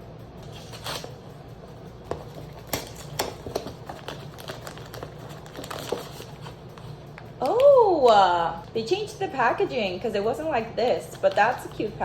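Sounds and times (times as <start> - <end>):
packaging clicks taps and rustles: 2.1 - 7.8.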